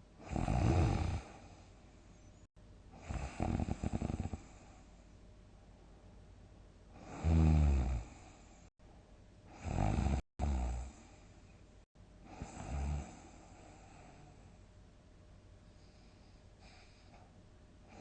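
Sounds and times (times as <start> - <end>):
person snoring loudly: 0.2 - 1.5, 3.0 - 4.5, 7.0 - 8.2, 9.5 - 11.0, 12.3 - 13.2.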